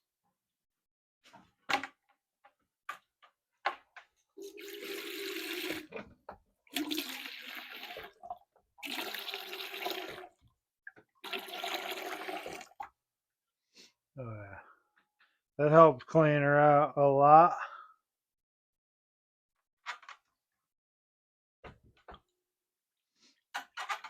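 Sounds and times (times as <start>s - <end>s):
liquid gushing from beer pump: 4.4s - 5.9s, 6.7s - 10.3s, 11.2s - 12.8s.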